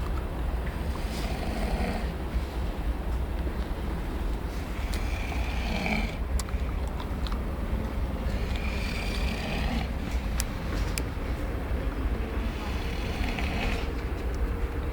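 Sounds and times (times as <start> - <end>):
steady low rumble: 0.0 - 14.9
person snoring: 5.0 - 6.2.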